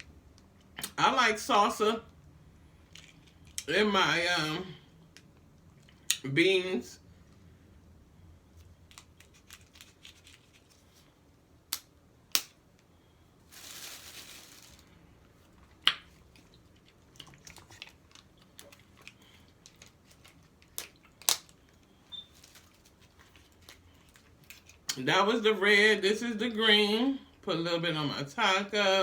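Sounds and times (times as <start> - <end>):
soft rustle: 13.4 - 15.6, 22.2 - 24.8
crunchy eating sounds: 15.4 - 25.0.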